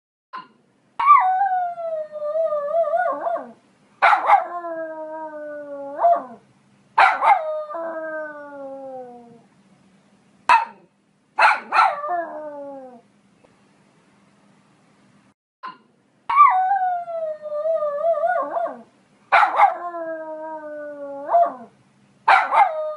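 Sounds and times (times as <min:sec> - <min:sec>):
dog barking: 0:04.0 - 0:04.5, 0:07.0 - 0:07.4, 0:10.5 - 0:12.0, 0:19.3 - 0:19.8, 0:22.3 - 0:22.8.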